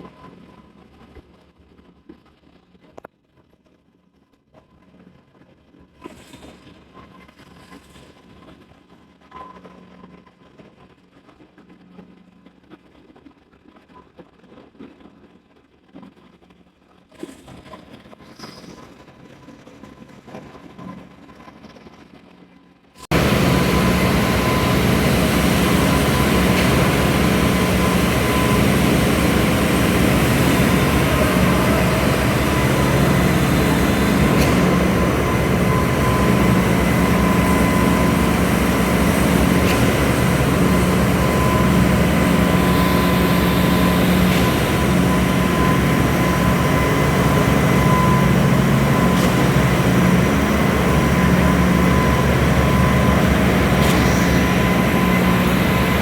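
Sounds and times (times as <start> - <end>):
diesel machinery engine hum: 23.1 - 56.0
thin steady whine: 23.1 - 56.0.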